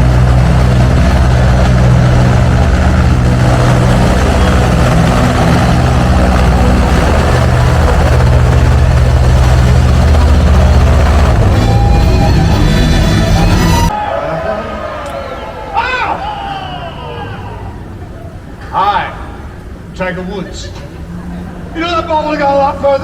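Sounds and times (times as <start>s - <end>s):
engine running loudly: 0.0s - 13.9s.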